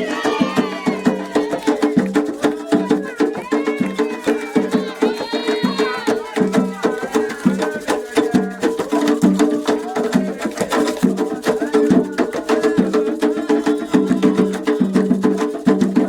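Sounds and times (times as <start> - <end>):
hand drums: 0.0 - 16.0
people singing: 0.0 - 16.0.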